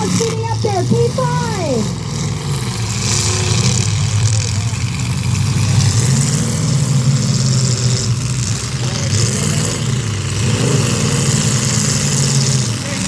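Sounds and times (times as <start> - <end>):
car engines revving: 0.0 - 13.0.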